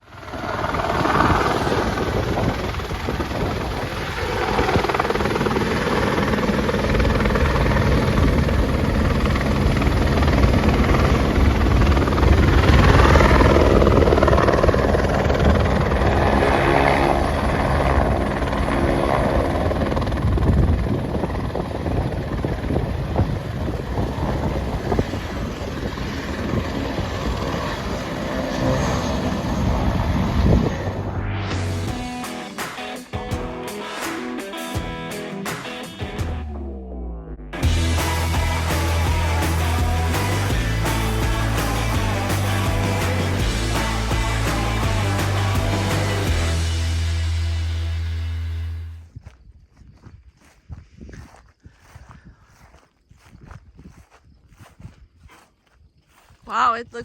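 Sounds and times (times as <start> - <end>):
large engine rumbling: 36.3 - 49.0.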